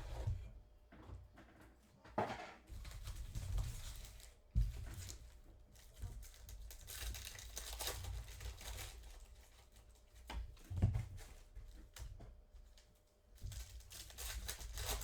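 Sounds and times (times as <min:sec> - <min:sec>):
packaging crinkling and tearing: 0:06.2 - 0:09.6, 0:13.6 - 0:15.0.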